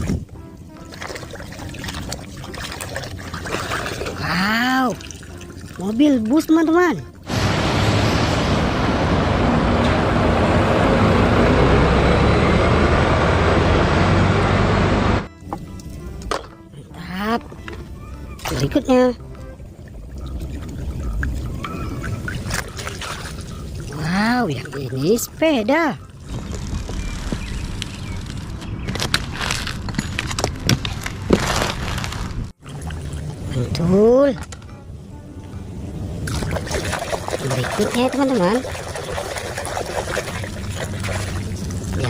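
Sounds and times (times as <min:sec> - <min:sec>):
water splashing in a basin: 0:00.8 - 0:06.4, 0:19.8 - 0:27.4, 0:32.6 - 0:33.9, 0:36.2 - 0:42.0
bus engine rumbling: 0:07.1 - 0:17.0
steady low rumble: 0:19.1 - 0:25.4.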